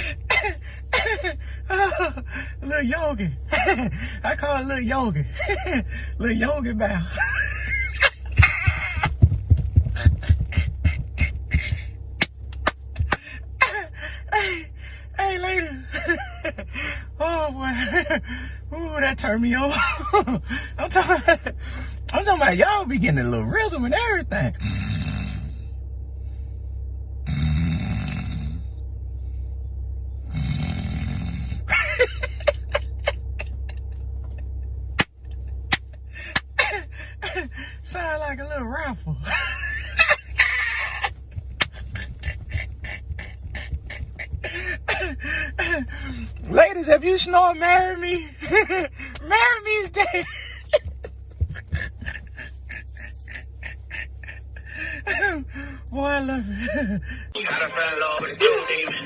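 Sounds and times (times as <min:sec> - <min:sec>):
steady low hum: 0:00.0 - 0:59.0
man beatboxing a snore: 0:24.6 - 0:25.6, 0:27.3 - 0:28.6, 0:30.3 - 0:31.7.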